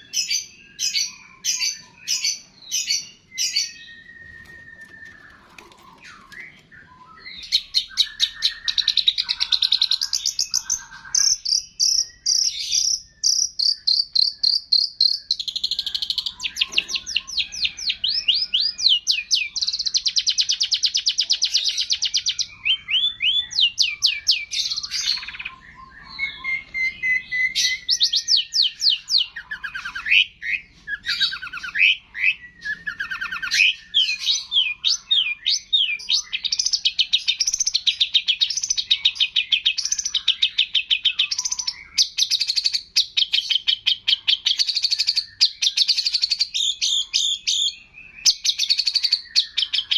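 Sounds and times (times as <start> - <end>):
shrike chirps and trills: 0.0 - 49.9.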